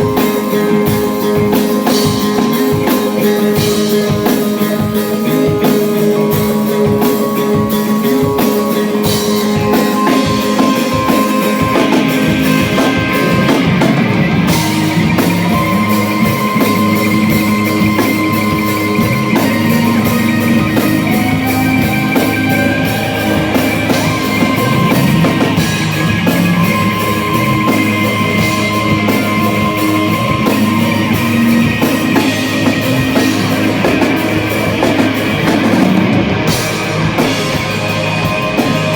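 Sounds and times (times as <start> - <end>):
live rock band playing: 0.0 - 38.9.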